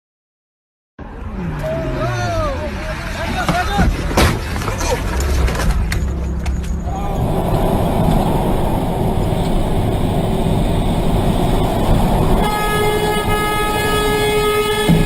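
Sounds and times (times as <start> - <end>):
vehicle rumble: 1.0 - 15.0
horn blast: 12.3 - 15.0.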